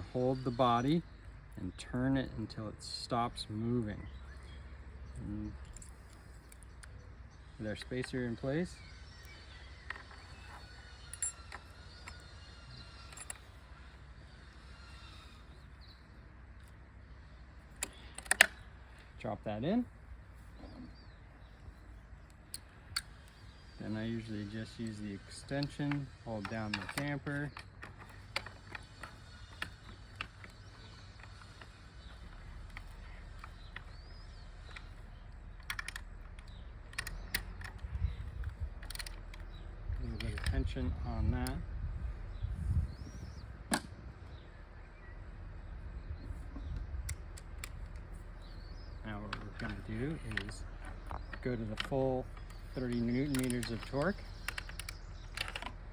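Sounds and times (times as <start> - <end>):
high background chirping: 0.0 - 55.9
light clicks and taps of parts: 24.6 - 41.6, 46.2 - 55.9.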